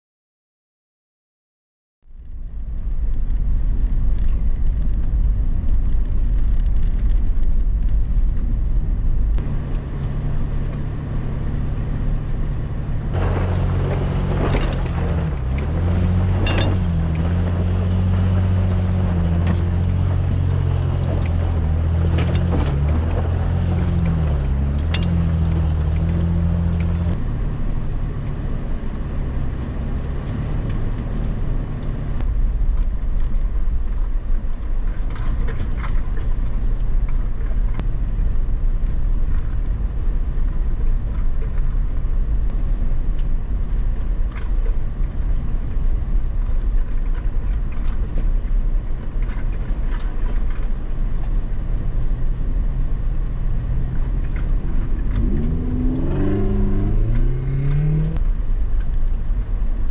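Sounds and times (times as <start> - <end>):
engine and tyre rumble: 2.0 - 59.9
clicks and rattles: 13.1 - 27.2.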